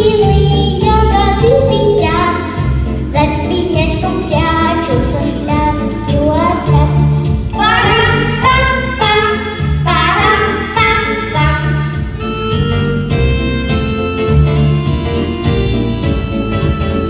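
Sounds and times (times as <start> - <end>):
person singing children's song: 0.0 - 12.5
backing track with pulsing bass: 0.0 - 17.0.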